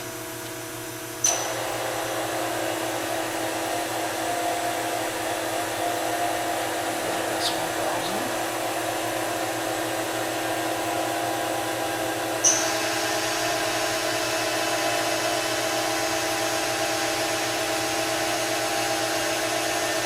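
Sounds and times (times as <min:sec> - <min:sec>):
milling machine spindle hum: 0:00.1 - 0:19.9
sharp click with high ring: 0:01.2 - 0:01.5, 0:12.4 - 0:12.7.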